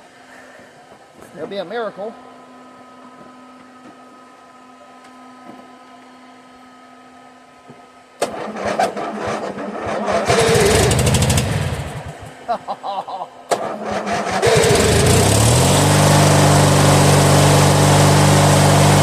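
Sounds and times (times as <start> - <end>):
mower starter cranking engine: 8.2 - 12.3, 13.5 - 19.0.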